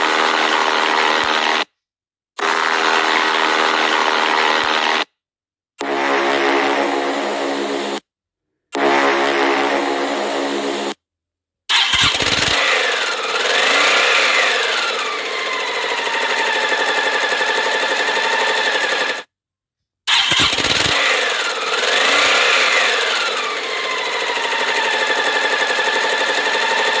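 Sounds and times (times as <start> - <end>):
engine starting and revving: 11.7 - 19.3, 20.1 - 27.0.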